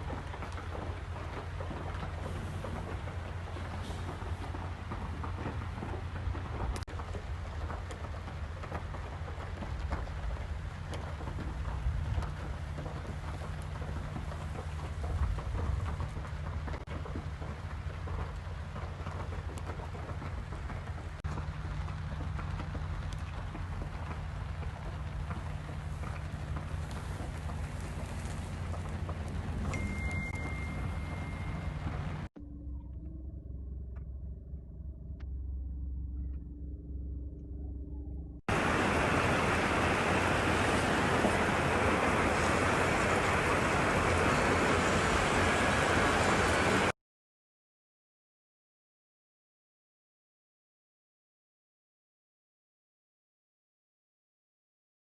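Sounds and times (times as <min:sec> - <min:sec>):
steady rain falling: 0:00.0 - 0:32.3, 0:38.5 - 0:46.9
low rumble: 0:00.0 - 0:46.6.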